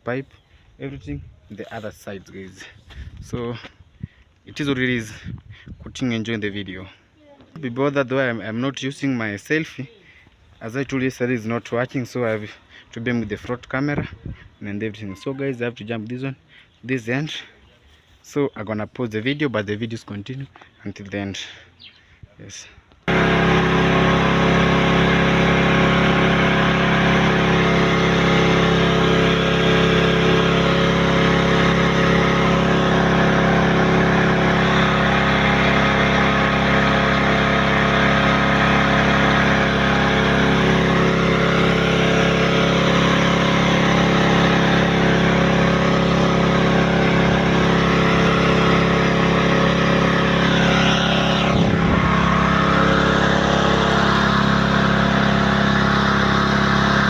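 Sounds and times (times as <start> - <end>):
engine-driven water pump running: 23.0 - 57.0.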